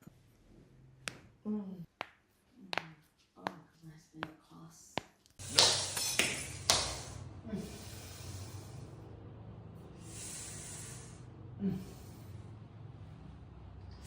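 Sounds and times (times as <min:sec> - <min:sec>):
long breathy hiss: 0:06.9 - 0:09.2, 0:09.8 - 0:12.6.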